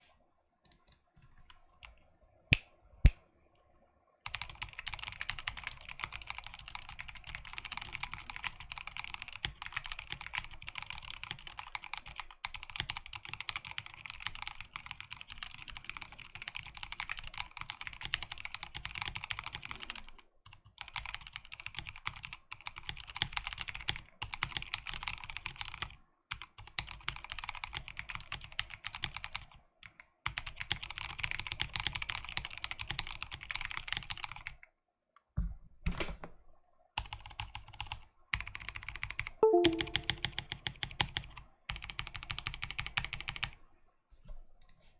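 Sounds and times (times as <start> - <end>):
mechanical keyboard typing: 4.3 - 34.6, 37.0 - 43.5.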